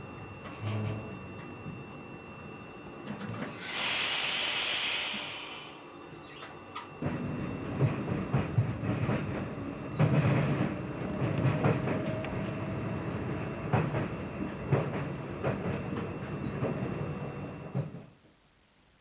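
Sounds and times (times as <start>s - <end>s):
train rumbling: 0.0s - 1.8s, 6.7s - 18.2s
wheels clacking on rails: 6.8s - 18.1s.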